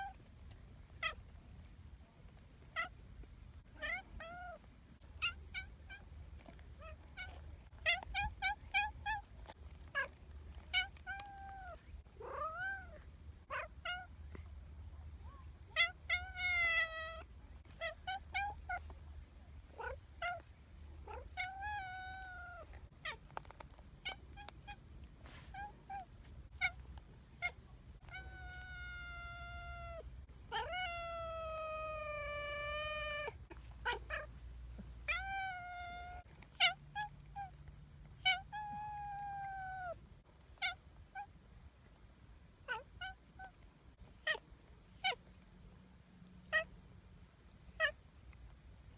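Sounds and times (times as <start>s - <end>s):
cat chirping calls: 3.6s - 6.0s, 15.2s - 19.0s, 27.4s - 34.4s
cat meowing: 27.4s - 34.3s, 35.1s - 37.5s.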